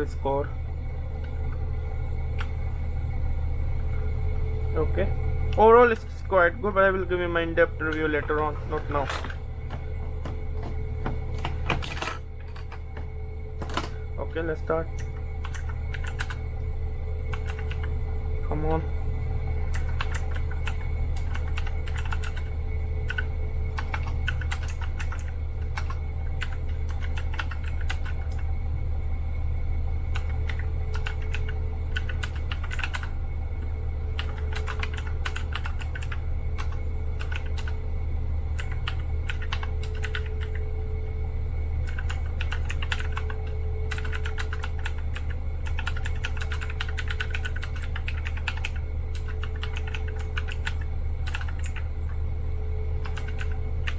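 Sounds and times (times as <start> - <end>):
low hum: 0.0 - 53.9
mechanical keyboard typing: 15.4 - 16.4, 17.3 - 17.9, 19.7 - 22.5, 23.1 - 28.4, 30.2 - 33.1, 34.2 - 37.8, 38.6 - 40.6, 41.9 - 51.8, 53.0 - 53.9.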